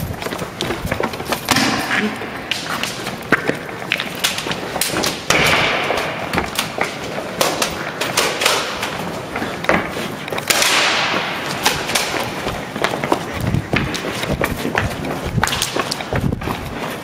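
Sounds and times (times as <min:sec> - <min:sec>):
pellets striking targets: 0:01.4 - 0:14.0
airsoft gun firing: 0:10.5 - 0:11.4.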